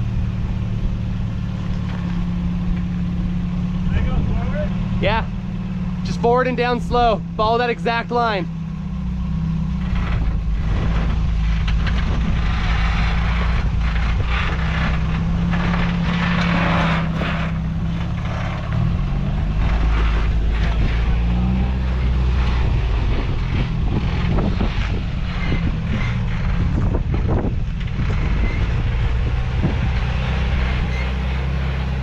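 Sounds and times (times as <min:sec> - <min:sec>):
truck engine running at low revs: 0:00.0 - 0:32.0
tyres crunching and scraping on rock: 0:09.8 - 0:31.8.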